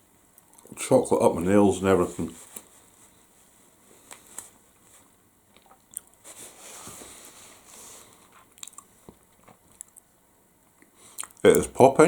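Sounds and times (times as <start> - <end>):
person chewing: 5.5 - 6.2, 8.4 - 10.1, 10.8 - 11.4.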